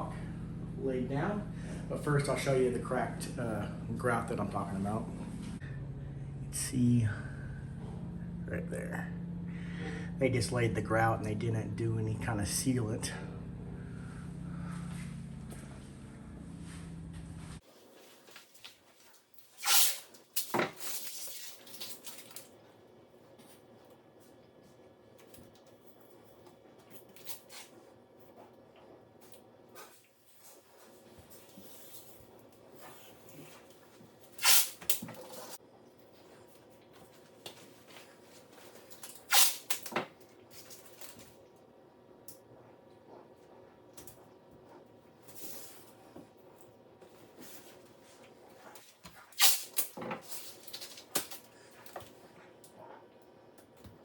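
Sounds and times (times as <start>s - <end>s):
tape ripping off roll: 19.4s - 22.5s, 34.4s - 35.6s, 38.9s - 41.2s, 49.1s - 51.4s.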